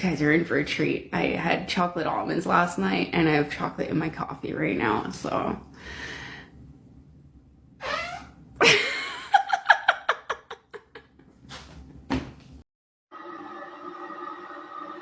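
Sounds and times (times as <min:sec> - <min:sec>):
woman farting: 0:07.8 - 0:08.4.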